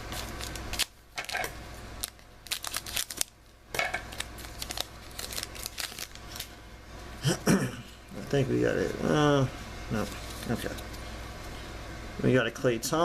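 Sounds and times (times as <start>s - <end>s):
cards clicking and rustling: 0.0s - 6.5s
wrapper crinkling and tearing: 0.0s - 6.5s, 10.0s - 10.8s.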